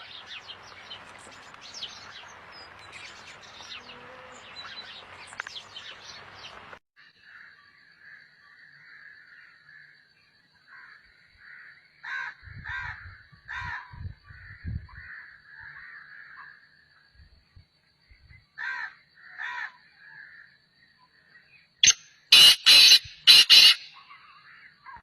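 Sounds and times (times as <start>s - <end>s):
birds chirping: 0.0s - 10.0s, 20.9s - 25.0s
crows cawing: 10.7s - 16.6s, 18.6s - 20.5s, 22.3s - 25.0s.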